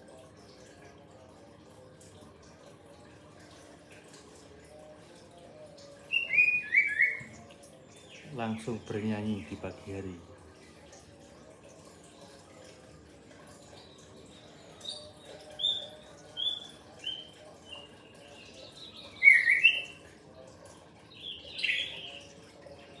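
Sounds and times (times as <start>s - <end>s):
songbird whistling: 6.1s - 7.4s, 18.9s - 20.0s, 21.2s - 22.2s.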